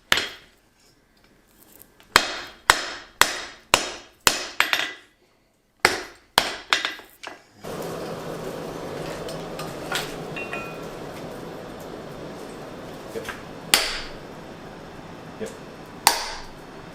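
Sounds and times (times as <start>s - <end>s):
steady rushing noise with hum: 7.6s - 16.9s
hammer striking hot steel on anvil: 9.0s - 12.6s, 13.2s - 14.2s, 16.0s - 16.6s.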